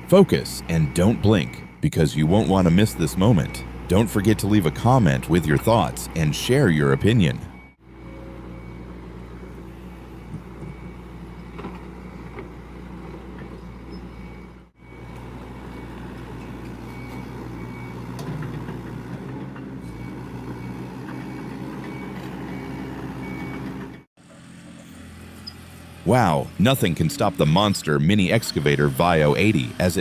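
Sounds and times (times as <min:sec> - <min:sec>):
heavy machine engine running: 0:00.0 - 0:30.0
high-pitched beeping alarm: 0:00.7 - 0:12.4, 0:13.6 - 0:18.7.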